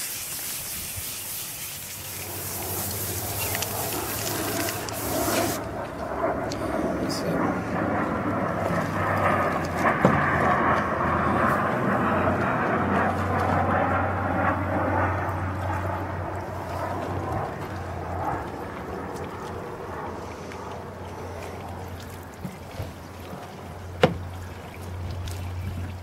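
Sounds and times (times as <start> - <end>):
wet sandpaper scrubbing plastic: 0.0 - 5.6
low hum: 0.2 - 26.0.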